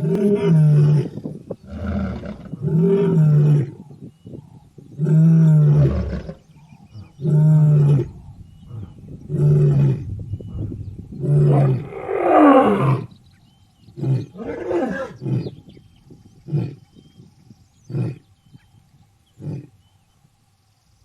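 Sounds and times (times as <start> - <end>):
lion roaring: 5.0 - 10.1, 11.2 - 13.1, 14.0 - 15.5
lion grunting: 10.7 - 13.1, 13.9 - 15.6.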